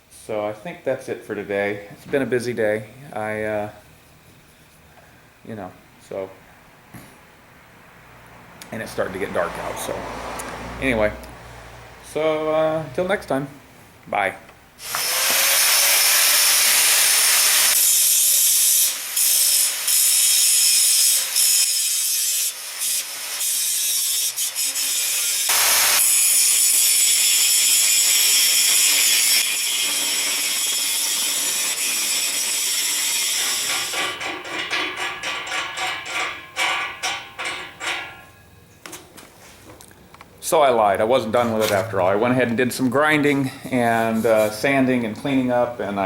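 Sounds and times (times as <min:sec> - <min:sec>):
grinding on steel: 0:14.8 - 0:38.2.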